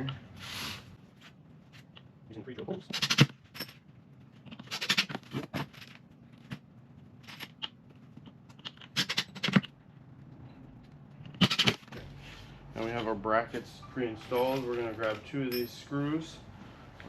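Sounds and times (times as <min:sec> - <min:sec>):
metal hardware clicking and rattling: 0:14.2 - 0:16.0.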